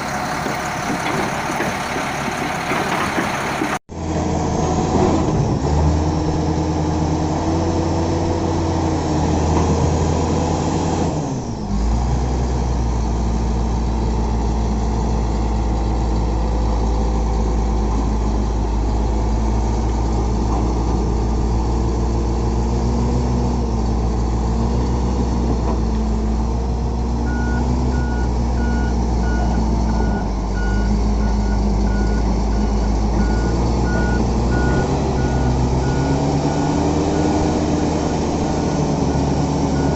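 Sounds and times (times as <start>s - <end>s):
bulldozer diesel engine running: 0.0s - 4.7s, 5.3s - 39.9s
reversing alarm beeping: 27.3s - 37.4s, 38.6s - 39.9s.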